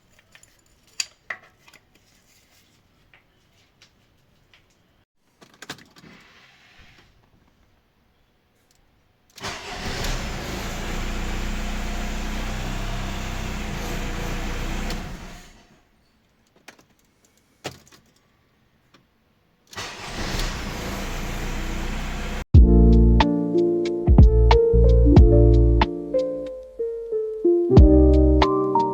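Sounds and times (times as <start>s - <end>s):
car engine starting and running: 9.4s - 15.4s, 19.8s - 22.5s.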